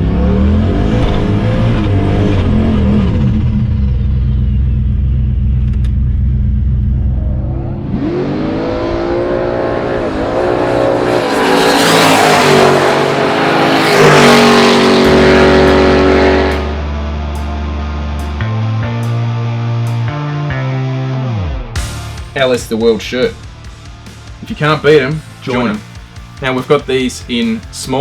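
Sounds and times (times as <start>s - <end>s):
drag car engine accelerating: 0.0s - 18.4s.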